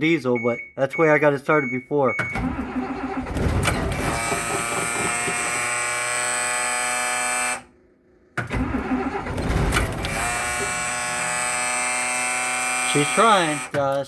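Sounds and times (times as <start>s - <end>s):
diesel engine cranking: 2.2s - 7.6s, 8.3s - 14.0s
dashboard warning buzzer: 4.0s - 7.7s, 10.1s - 13.8s.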